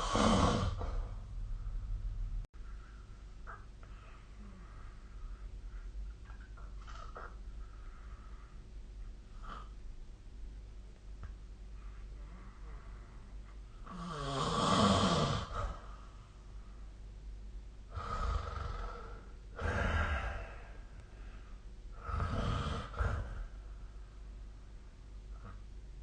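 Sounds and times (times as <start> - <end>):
person snoring: 0.0 - 1.2, 13.8 - 15.9, 17.9 - 20.8, 21.9 - 23.6.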